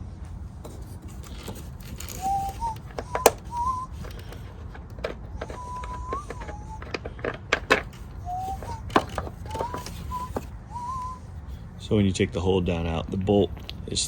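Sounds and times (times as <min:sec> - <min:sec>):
thin whistling squeaks: 0:00.7 - 0:11.9.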